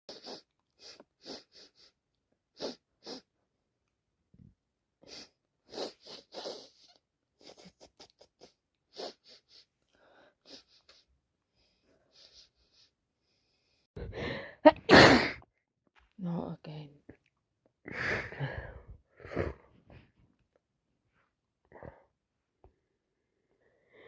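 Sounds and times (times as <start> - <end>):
person sneezing: 14.7 - 15.4.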